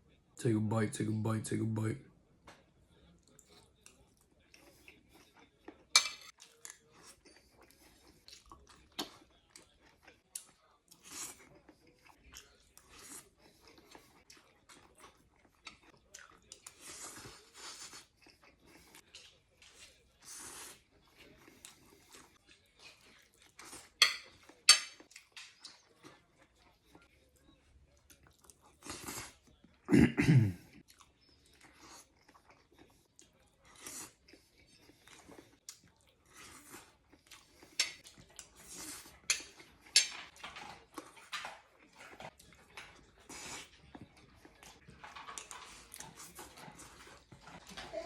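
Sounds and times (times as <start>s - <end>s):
person chewing food: 2.5s - 29.8s, 30.7s - 48.0s.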